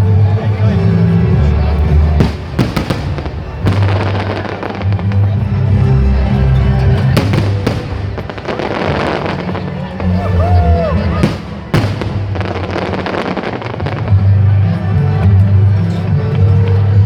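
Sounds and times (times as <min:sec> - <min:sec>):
fireworks bangs: 0:02.1 - 0:05.1, 0:07.0 - 0:14.1.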